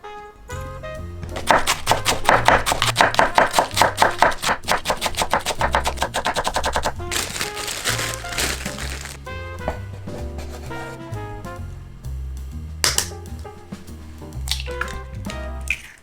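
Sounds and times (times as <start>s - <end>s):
background music: 0.0s - 16.0s
knife chopping on cutting board: 1.3s - 7.4s, 9.6s - 11.0s.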